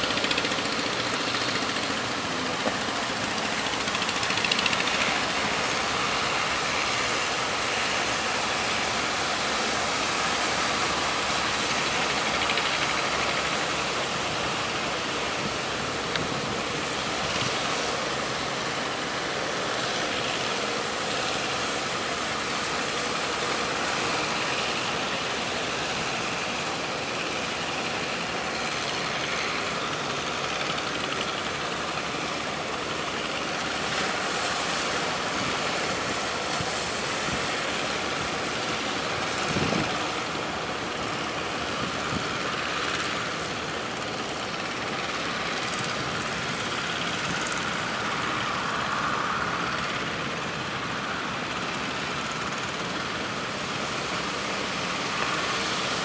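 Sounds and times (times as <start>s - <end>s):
boat engine running: 0.0s - 56.0s
waves: 0.0s - 56.0s
strong wind: 39.2s - 40.6s.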